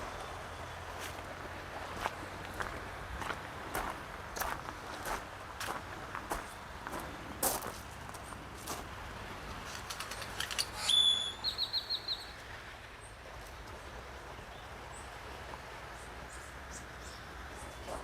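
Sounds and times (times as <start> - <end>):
faint outdoor ambience: 0.0 - 18.0
bird whistling call: 10.8 - 12.3.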